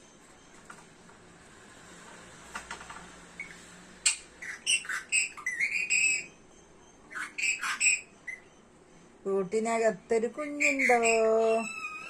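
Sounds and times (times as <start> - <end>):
parrot chirps and squawks: 3.4 - 6.4, 7.1 - 8.6, 10.4 - 12.0.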